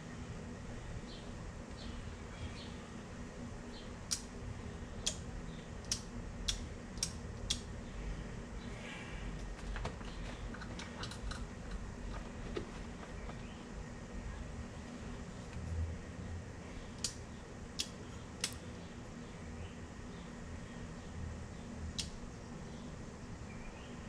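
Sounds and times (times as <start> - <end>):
steady low hum: 0.0 - 24.0
switches clicking: 4.1 - 4.3, 5.8 - 7.7.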